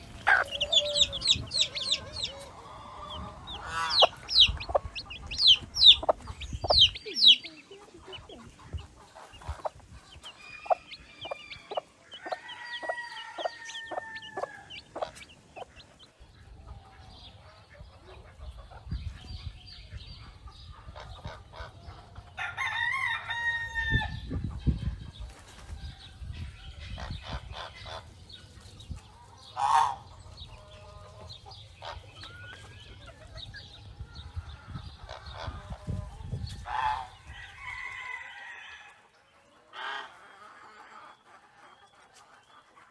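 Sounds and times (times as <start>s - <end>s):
rooster crowing: 0.0s - 4.0s, 10.6s - 14.8s, 22.4s - 24.2s
chickens clucking: 0.0s - 42.9s.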